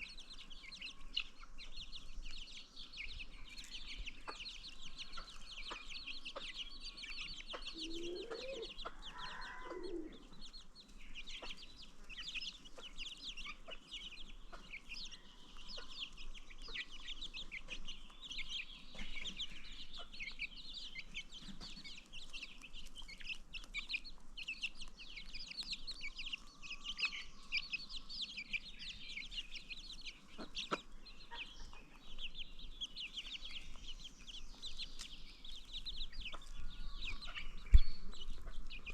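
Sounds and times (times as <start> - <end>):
baby chicks peeping: 0.0 - 38.9
adult chicken calls: 7.2 - 10.6.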